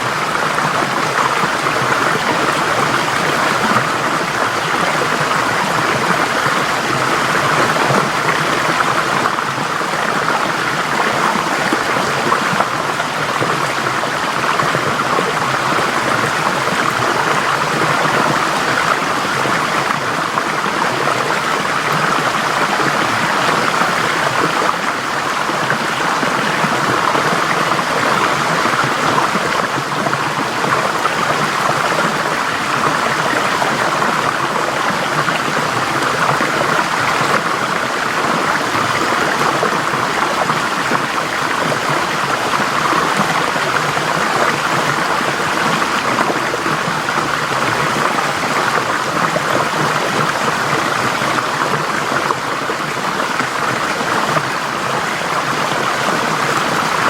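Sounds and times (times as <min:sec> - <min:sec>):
stream flowing over rocks: 0:00.0 - 0:57.0.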